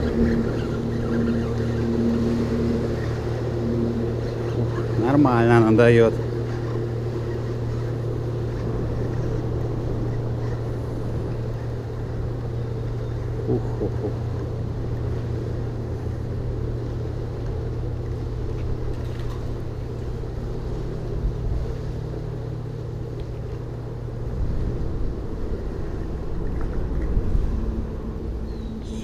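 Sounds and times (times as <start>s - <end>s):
low engine rumble: 0.0s - 29.0s.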